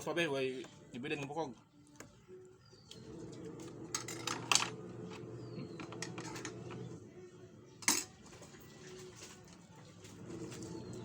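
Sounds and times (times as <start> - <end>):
utensils clinking on a plate: 3.9 - 4.8, 5.6 - 6.9, 7.8 - 8.2.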